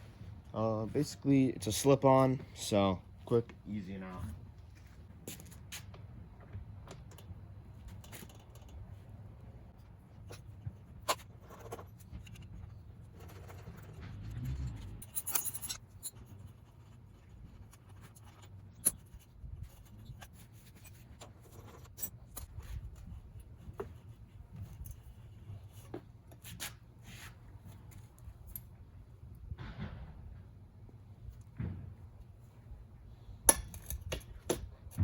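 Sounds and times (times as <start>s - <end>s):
hand tools on metal: 10.1s - 17.0s, 33.5s - 34.7s.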